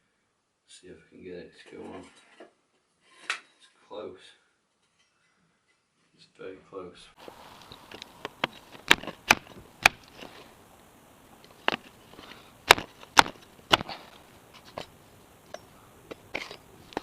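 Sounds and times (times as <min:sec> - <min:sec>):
pipe smacking on concrete: 0:12.7 - 0:14.0.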